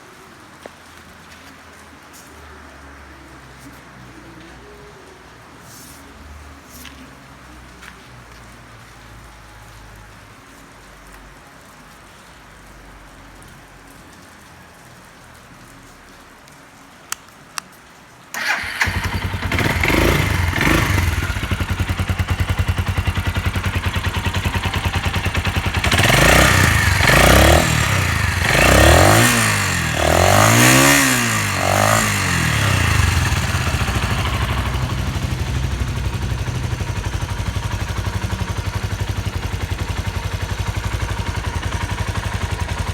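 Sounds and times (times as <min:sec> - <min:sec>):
motorcycle engine starting and idling: 0:18.3 - 0:42.9
engine revving: 0:18.4 - 0:38.1.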